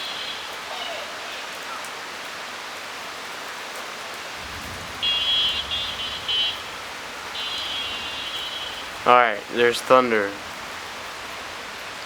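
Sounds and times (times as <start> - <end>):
steady rain: 0.0 - 12.0
low thunder rumble: 4.4 - 9.6, 10.4 - 12.0.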